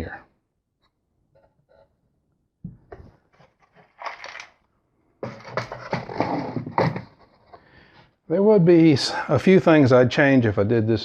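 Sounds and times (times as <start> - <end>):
wooden toolbox knocks and clicks: 5.2 - 7.3
wood scraping: 5.2 - 7.7.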